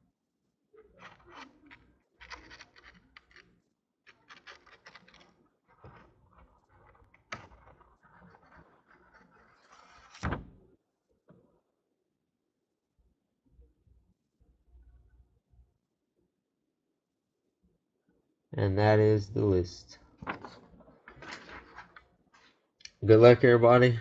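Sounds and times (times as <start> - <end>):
objects rustling and clicking on table: 1.0 - 3.5, 4.1 - 10.4, 20.2 - 22.6.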